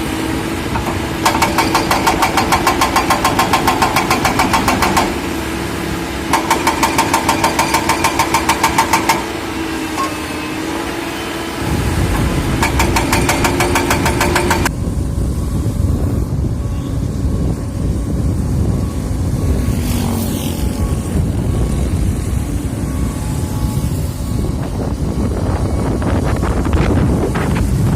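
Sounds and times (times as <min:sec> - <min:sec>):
excavator diesel engine rumble: 0:00.0 - 0:27.9
fast metallic clatter: 0:00.8 - 0:05.2, 0:06.3 - 0:09.3, 0:12.6 - 0:14.7.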